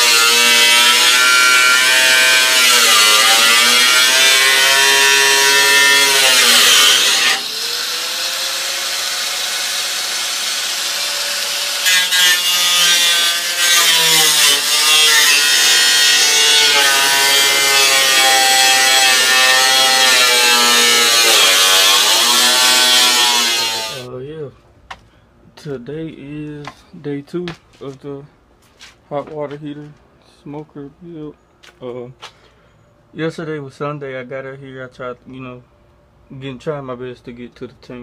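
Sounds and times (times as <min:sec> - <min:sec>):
grinder cutting steel: 0:00.0 - 0:24.1.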